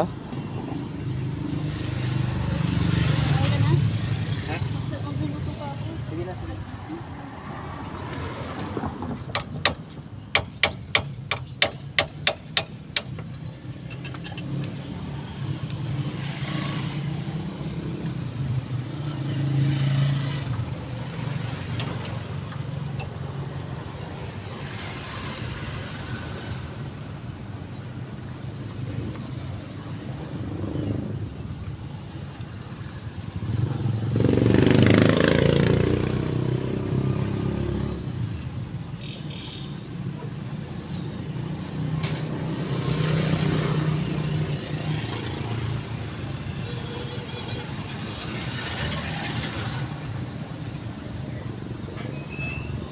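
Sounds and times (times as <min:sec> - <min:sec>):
sharp knocks: 0:09.1 - 0:13.3.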